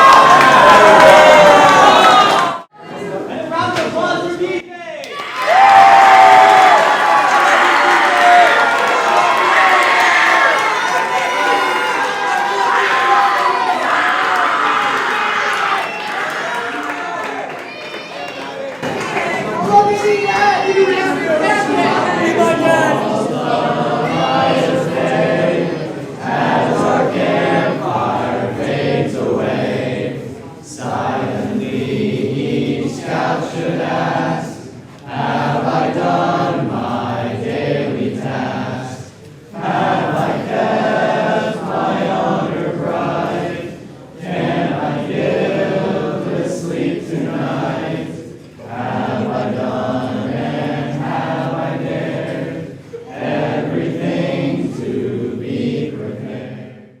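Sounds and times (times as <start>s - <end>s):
group singing slow song: 21.1s - 57.0s.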